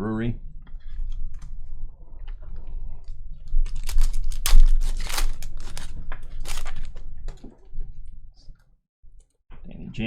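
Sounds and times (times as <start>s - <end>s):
plastic wrapper tearing and crinkling: 3.5s - 7.0s.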